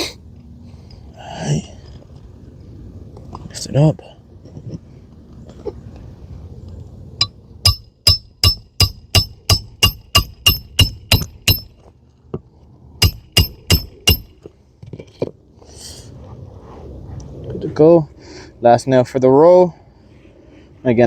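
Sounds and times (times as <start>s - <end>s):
hammer striking nail: 7.6s - 11.7s, 13.0s - 14.4s.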